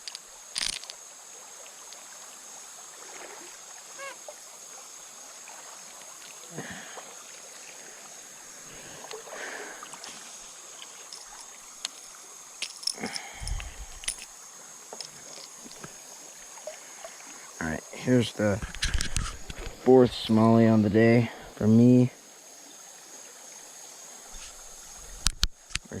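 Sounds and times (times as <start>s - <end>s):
creek water running: 0.0s - 26.0s
steady high hiss: 0.0s - 26.0s
faint splashes: 1.6s - 17.6s.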